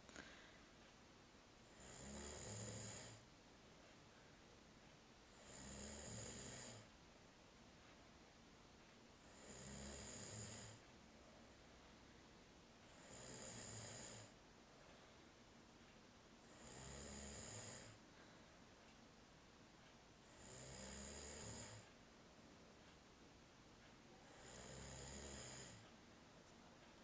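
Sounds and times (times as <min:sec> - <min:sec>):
faint snoring: 0:01.6 - 0:03.3, 0:05.3 - 0:06.9, 0:09.2 - 0:10.9, 0:12.9 - 0:14.4, 0:16.4 - 0:18.4, 0:20.2 - 0:22.0, 0:24.1 - 0:25.9.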